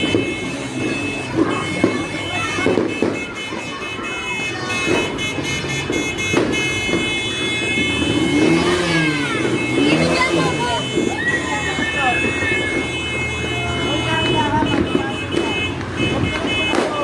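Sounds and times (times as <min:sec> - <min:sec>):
firecracker cracks: 0:00.0 - 0:03.5, 0:04.6 - 0:07.9, 0:14.7 - 0:17.0
people's voices: 0:00.0 - 0:17.0.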